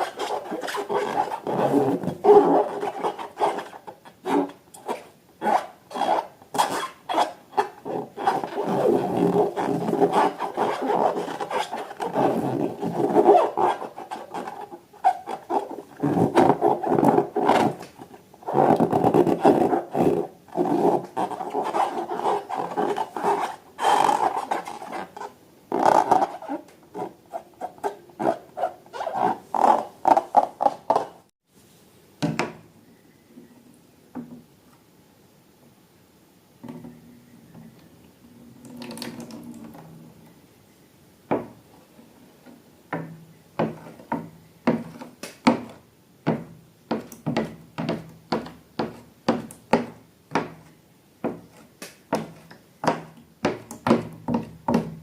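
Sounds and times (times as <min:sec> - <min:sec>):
slime scraping in a container: 0:00.0 - 0:31.2.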